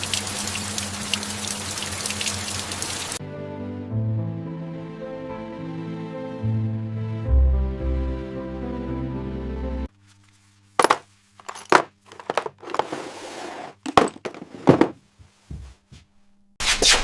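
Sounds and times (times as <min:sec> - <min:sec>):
background music: 0:03.2 - 0:09.9.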